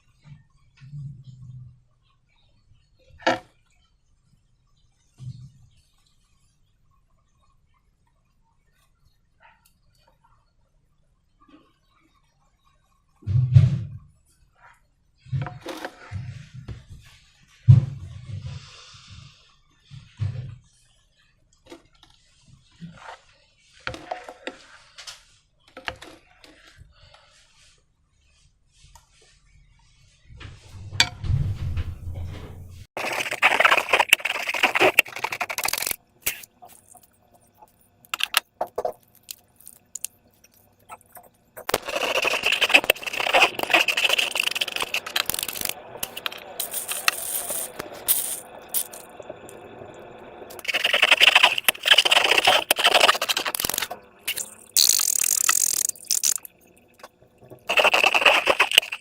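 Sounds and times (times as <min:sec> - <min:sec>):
low thump: 0:30.7 - 0:32.8
slime squelching: 0:33.0 - 0:49.2, 0:50.5 - 0:59.0.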